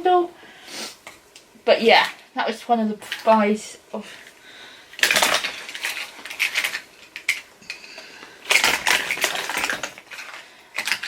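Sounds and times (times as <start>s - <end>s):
plastic toy figures clattering: 5.0s - 11.0s.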